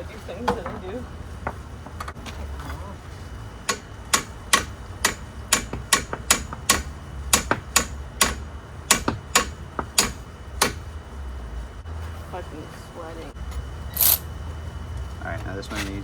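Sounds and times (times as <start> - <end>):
hammer striking metal: 3.7 - 10.8.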